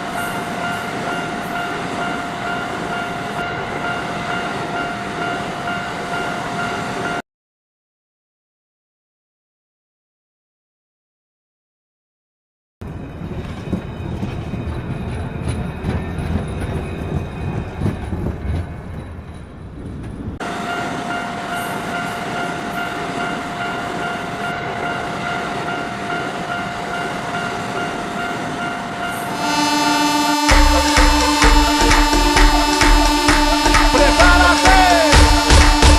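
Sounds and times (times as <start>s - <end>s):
train rumbling: 12.8s - 35.9s
steady high-pitched tone: 29.0s - 35.9s.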